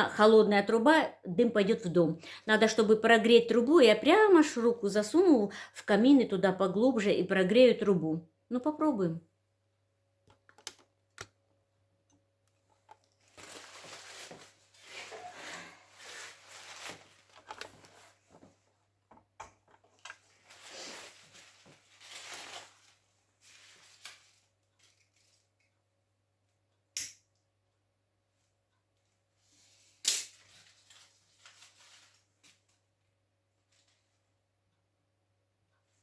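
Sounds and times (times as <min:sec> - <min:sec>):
sharp clicks and knocks: 0:10.2 - 0:11.4
paper crumpling and rustling: 0:13.0 - 0:18.5, 0:20.0 - 0:25.5, 0:30.3 - 0:32.8.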